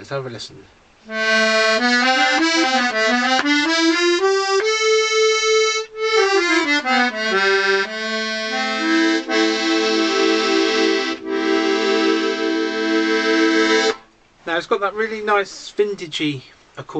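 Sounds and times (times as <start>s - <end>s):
accordion notes and chords: 1.1s - 14.1s.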